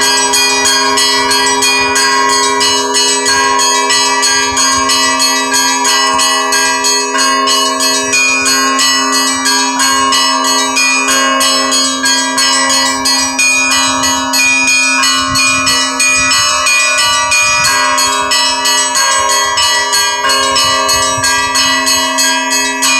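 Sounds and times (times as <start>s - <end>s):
large church bells ringing: 0.0s - 22.9s
small church bells struck rapidly: 0.0s - 22.9s.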